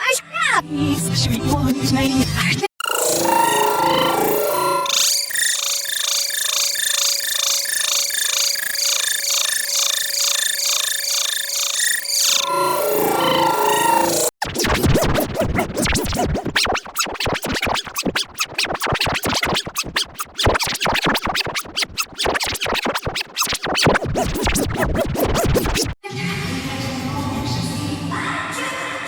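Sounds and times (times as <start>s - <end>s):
stuttering remix music: 1.0s - 26.0s
scratch-like sound: 14.4s - 26.0s.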